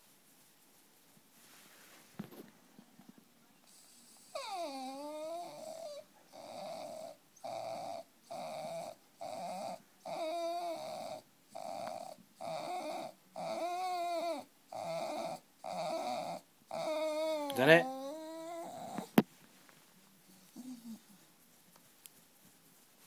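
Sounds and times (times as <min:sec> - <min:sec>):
dog snorting: 0:03.7 - 0:19.2.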